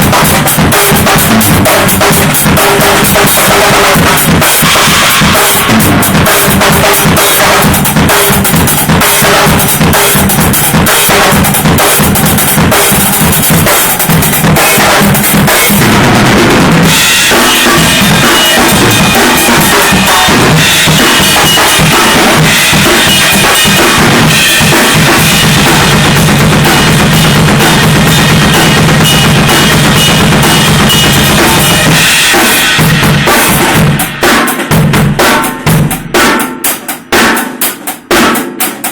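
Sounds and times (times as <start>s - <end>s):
acoustic drum kit playing: 0.0s - 38.9s.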